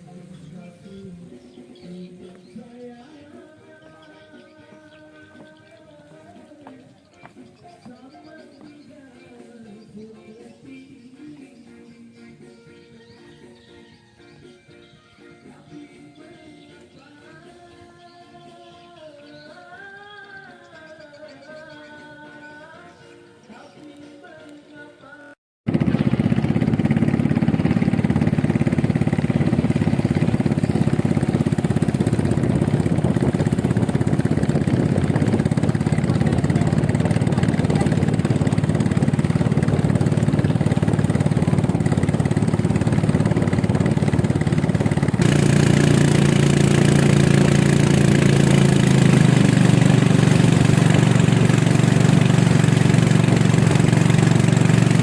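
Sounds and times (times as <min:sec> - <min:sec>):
small engine running: 0:25.7 - 0:55.0.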